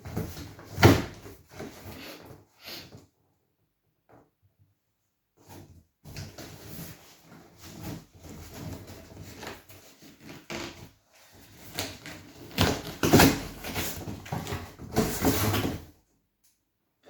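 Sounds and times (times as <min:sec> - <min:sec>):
cardboard box rustling and scraping: 0:05.5 - 0:15.9.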